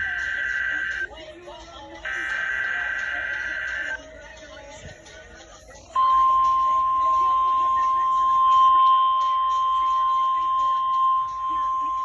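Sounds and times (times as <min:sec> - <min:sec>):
steady high alarm tone: 0:00.0 - 0:01.1, 0:02.0 - 0:04.0, 0:06.0 - 0:12.0
faint radio hiss: 0:00.0 - 0:06.0.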